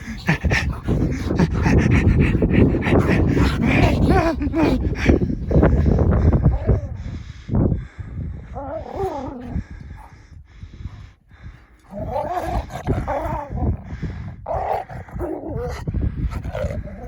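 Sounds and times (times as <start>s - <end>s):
dogs whining and grumbling: 0.0s - 7.0s, 8.4s - 10.2s, 11.8s - 17.0s
low rumble: 0.0s - 12.1s.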